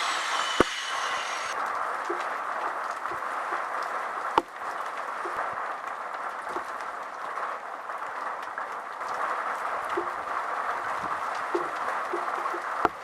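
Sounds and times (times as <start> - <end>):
sharp knock: 0.0 - 1.5
heavy rain falling: 1.5 - 13.0.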